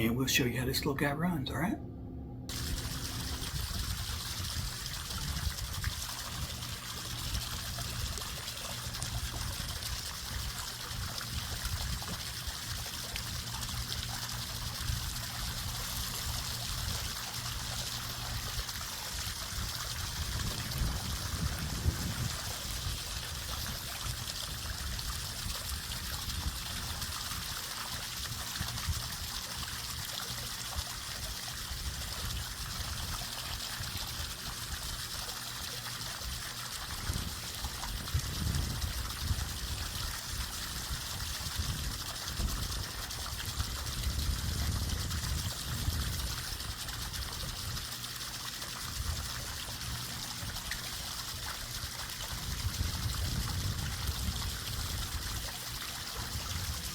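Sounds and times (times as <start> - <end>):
low rumble: 0.0 - 5.5
water trickling: 2.5 - 56.9.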